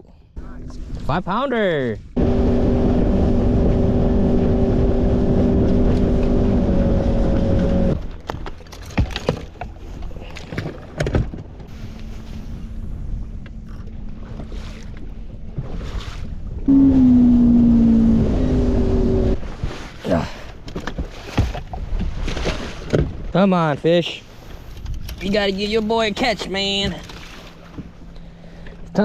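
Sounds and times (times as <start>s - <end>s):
boat motor humming: 2.0s - 19.7s, 26.0s - 29.0s.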